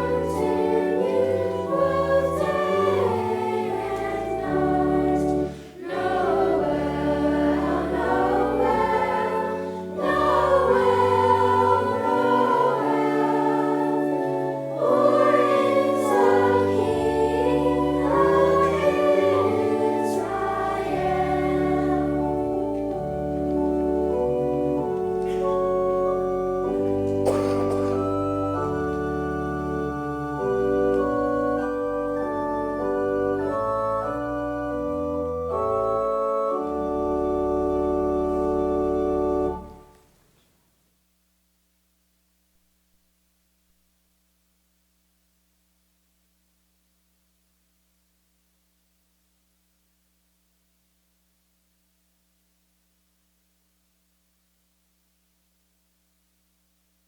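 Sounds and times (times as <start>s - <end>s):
choir singing: 0.0s - 37.0s
organ chords: 0.0s - 40.1s.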